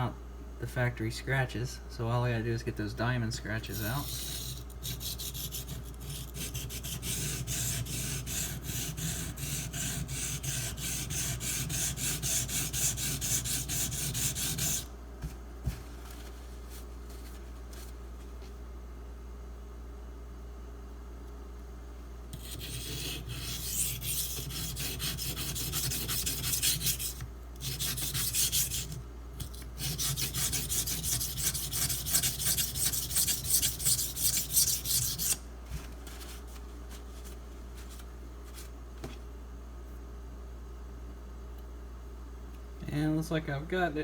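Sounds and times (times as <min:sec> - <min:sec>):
knife blade scraping on whetstone: 0:03.7 - 0:14.8, 0:22.4 - 0:35.4.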